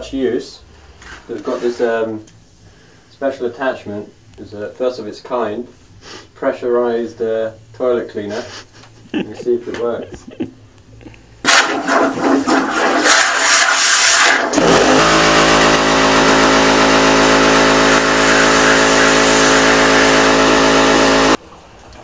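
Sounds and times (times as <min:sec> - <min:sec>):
compressed air blasting into water: 0:11.4 - 0:21.4
air hissing: 0:13.1 - 0:21.4
air compressor motor humming: 0:14.5 - 0:21.4.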